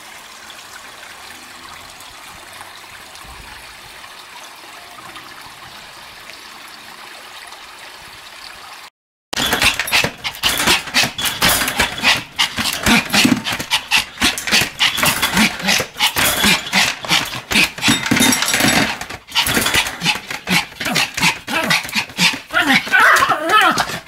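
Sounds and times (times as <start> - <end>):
small dog barking: 20.9 - 24.0.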